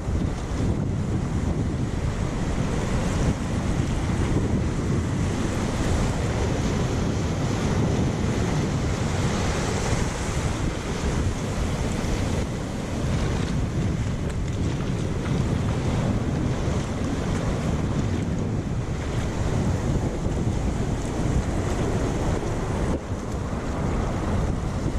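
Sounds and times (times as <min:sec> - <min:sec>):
sea surf: 0:00.0 - 0:24.9
wind buffeting microphone: 0:00.0 - 0:24.9.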